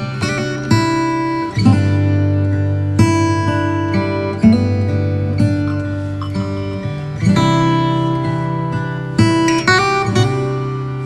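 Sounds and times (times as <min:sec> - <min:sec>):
acoustic guitar strummed chords: 0:00.0 - 0:11.0.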